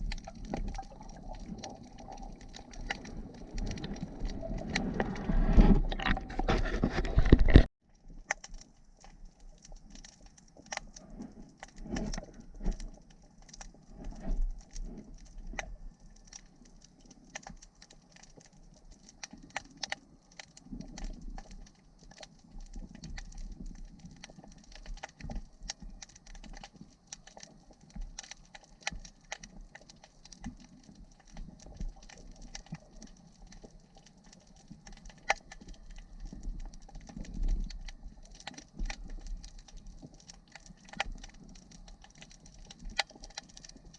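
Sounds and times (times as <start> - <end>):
underwater water rumble: 0.0 - 28.2
sharp clicks and crackles: 0.0 - 43.9.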